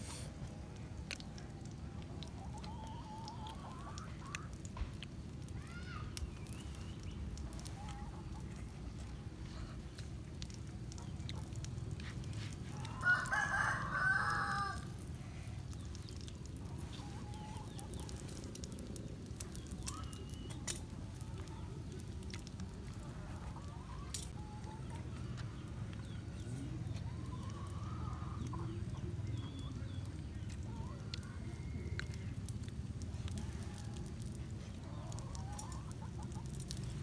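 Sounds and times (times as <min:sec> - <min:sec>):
low background noise: 0:00.0 - 0:37.0
rooster crowing: 0:13.0 - 0:14.9.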